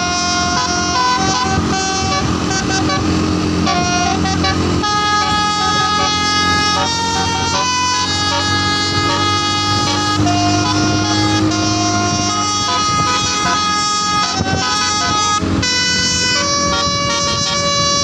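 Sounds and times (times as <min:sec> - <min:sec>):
low engine rumble: 0:00.0 - 0:18.0
musical air horn playing a tune: 0:00.0 - 0:18.0.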